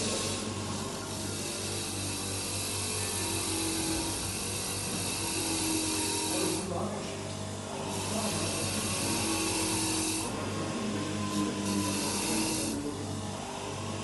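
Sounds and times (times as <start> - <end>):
workshop tool hissing: 0.0 - 6.9, 7.8 - 13.1.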